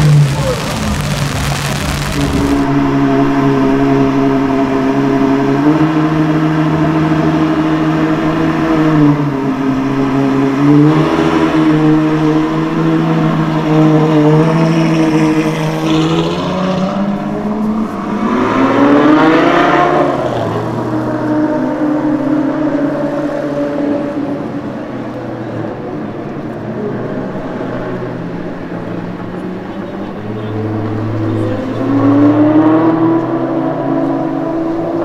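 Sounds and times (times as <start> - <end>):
car engine revving: 0.0 - 24.6.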